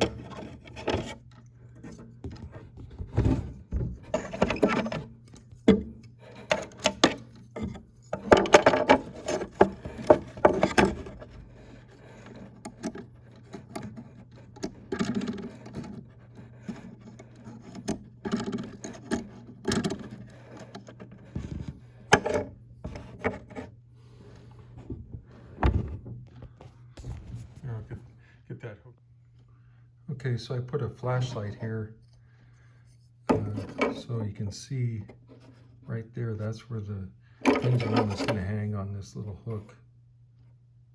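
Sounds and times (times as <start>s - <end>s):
wooden clock case knocks and scrapes: 0.0s - 23.7s, 33.3s - 34.1s
faint steady hum: 0.0s - 40.9s.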